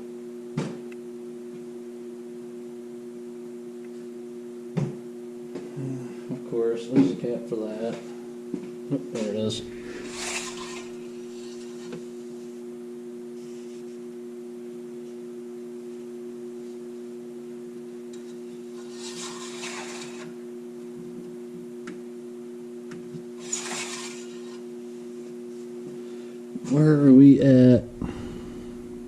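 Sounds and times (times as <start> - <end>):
steady two-tone hum: 0.0 - 29.0
short rubbing noises: 9.6 - 11.8.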